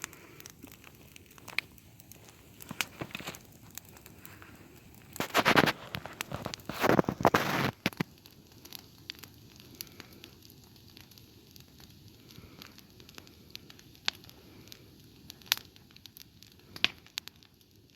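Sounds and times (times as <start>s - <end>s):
campfire crackling: 0.0s - 17.9s
fire pops: 0.0s - 17.9s
noisy rustle: 2.2s - 8.1s.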